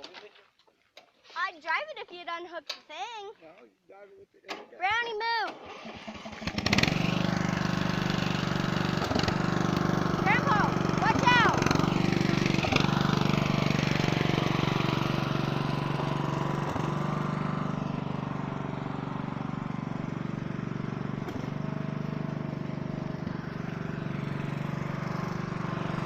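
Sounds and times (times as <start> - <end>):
lawn tractor engine running: 5.5 - 26.0.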